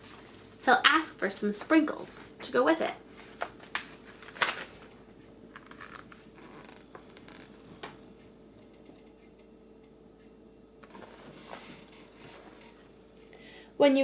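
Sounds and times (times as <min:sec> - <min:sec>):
book page turning: 0:03.2 - 0:04.9, 0:05.5 - 0:07.6.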